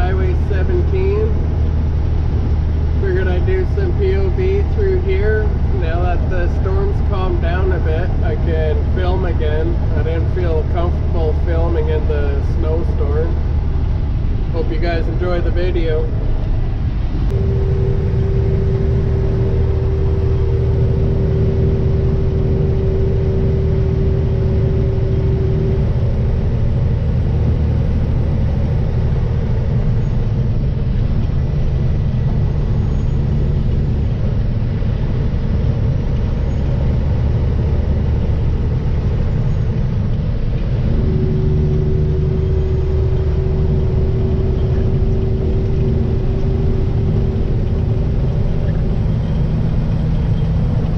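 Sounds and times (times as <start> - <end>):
mid-pitched hum: 0.0 - 50.9
vehicle engine and road drone: 0.0 - 50.9.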